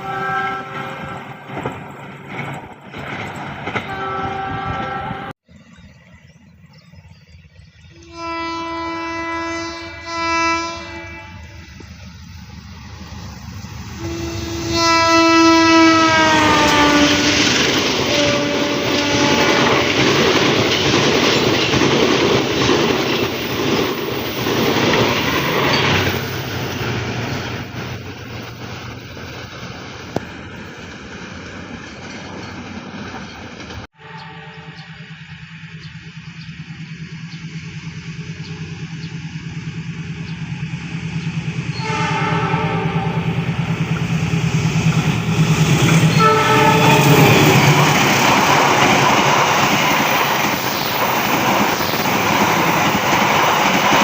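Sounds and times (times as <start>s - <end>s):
train horn blasts: 0.0s - 1.3s, 3.8s - 5.4s, 7.9s - 11.8s, 13.9s - 20.0s, 33.9s - 35.1s, 41.7s - 43.6s, 45.9s - 47.9s
train wheel and rail noise: 0.0s - 54.0s.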